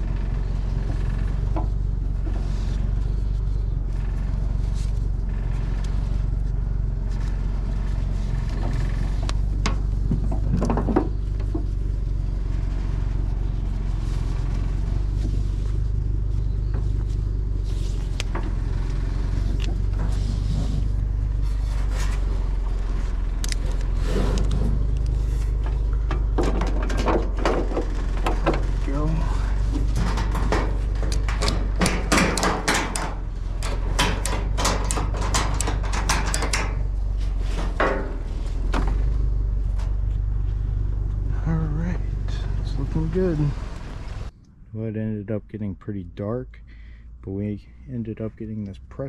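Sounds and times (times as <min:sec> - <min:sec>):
knocks and rattles: 0:00.0 - 0:03.0, 0:03.9 - 0:40.1
vehicle engine running: 0:00.0 - 0:49.0.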